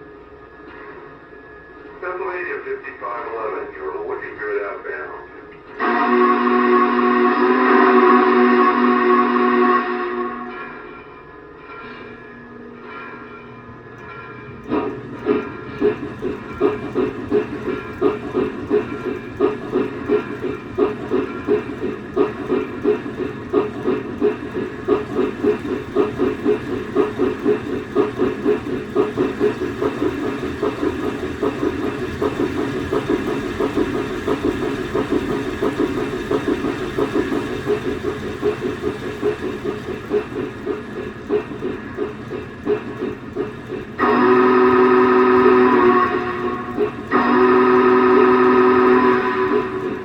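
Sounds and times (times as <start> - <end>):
steam locomotive exhaust chuffing: 0.0 - 50.0
multi-tone steam whistle: 5.7 - 11.8, 44.0 - 50.0.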